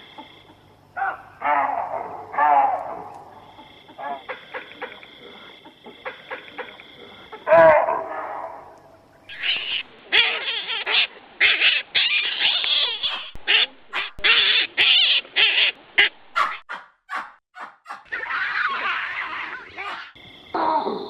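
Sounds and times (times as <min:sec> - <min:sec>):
longer noisy animal call: 0:00.0 - 0:16.6, 0:17.2 - 0:21.0
short animal calls: 0:09.3 - 0:20.1.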